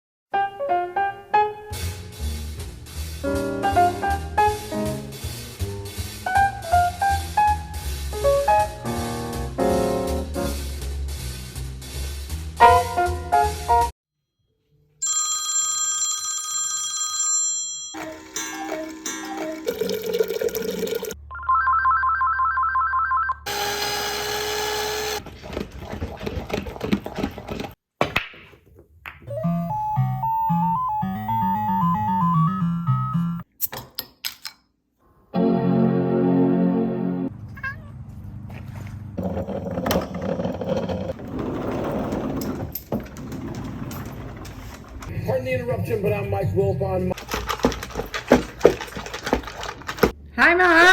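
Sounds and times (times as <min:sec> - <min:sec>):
telephone ringing: 0:15.0 - 0:23.5
melodic music: 0:18.0 - 0:21.2, 0:29.3 - 0:33.5
piano notes and chords: 0:29.3 - 0:33.4.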